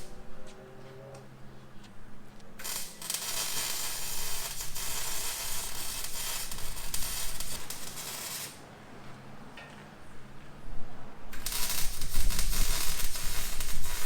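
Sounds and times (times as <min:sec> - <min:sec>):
welder hissing: 0:02.6 - 0:08.6, 0:11.4 - 0:14.0.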